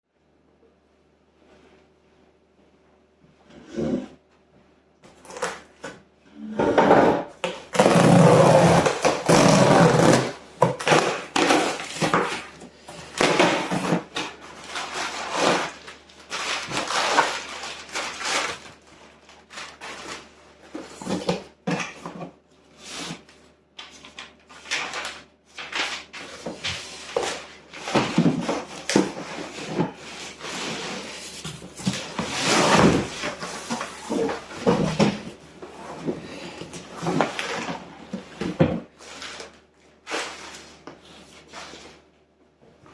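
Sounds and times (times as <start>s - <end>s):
cardboard box rustling and scraping: 25.8s - 42.0s.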